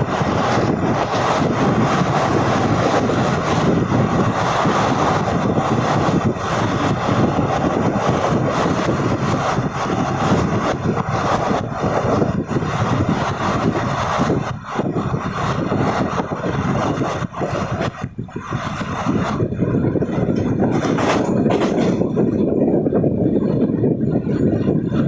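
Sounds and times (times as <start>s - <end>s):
train wheels rumbling on rail: 0.0s - 25.0s
wind rushing: 0.0s - 25.0s
quick irregular clattering: 20.3s - 22.3s.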